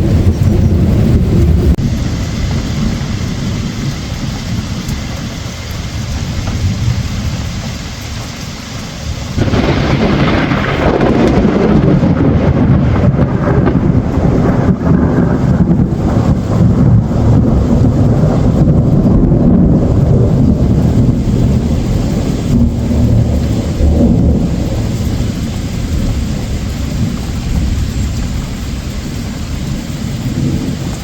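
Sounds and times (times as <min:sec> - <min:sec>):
deep rolling thunder: 0:00.0 - 0:31.0
low rumble: 0:00.0 - 0:31.0
rain falling: 0:00.0 - 0:31.0.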